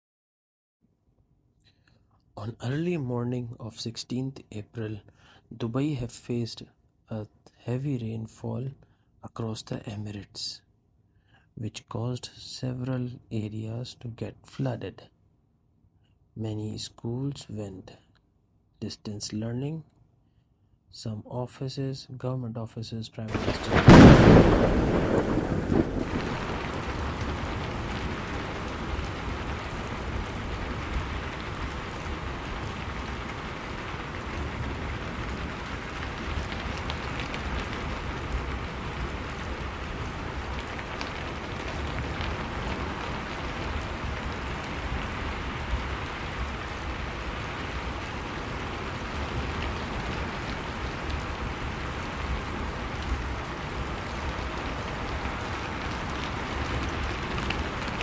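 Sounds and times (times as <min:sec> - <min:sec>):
heavy rain pouring: 0:23.3 - 0:58.0
rain drop ticks: 0:23.3 - 0:58.0.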